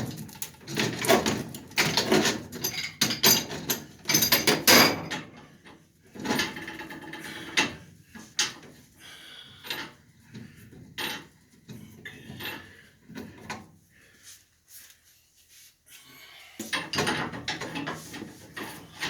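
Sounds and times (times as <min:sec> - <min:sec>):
knocks and clunks of tools: 0:16.6 - 0:18.8.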